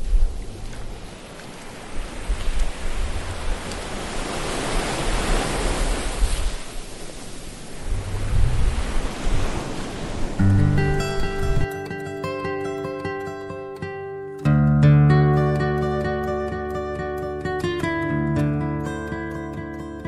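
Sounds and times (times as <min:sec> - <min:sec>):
wind gusts on microphone: 0:00.0 - 0:11.6
ocean surf washing in: 0:00.0 - 0:13.2.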